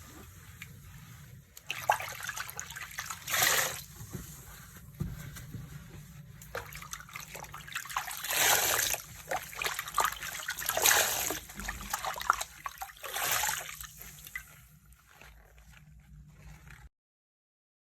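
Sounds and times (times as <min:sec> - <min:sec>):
water splashing: 0:00.0 - 0:03.9, 0:06.5 - 0:16.9
soapy water sloshing: 0:00.0 - 0:16.9.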